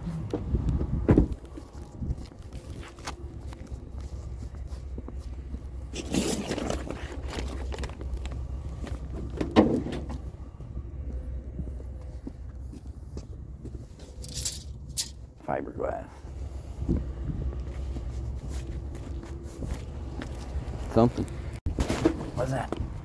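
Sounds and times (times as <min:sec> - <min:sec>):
vehicle engine rumbling: 0:00.0 - 0:23.0
scraping clatter: 0:05.9 - 0:10.2, 0:13.9 - 0:15.2.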